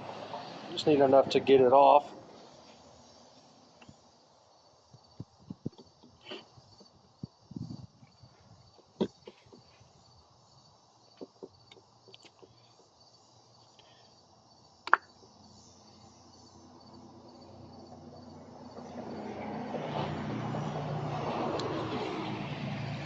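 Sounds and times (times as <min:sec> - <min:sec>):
small parts clicking and tapping: 0:11.1 - 0:13.0.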